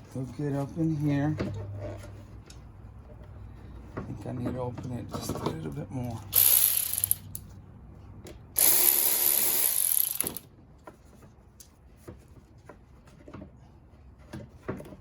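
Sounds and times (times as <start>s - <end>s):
cordless power driver running: 6.3s - 7.2s, 8.6s - 10.4s.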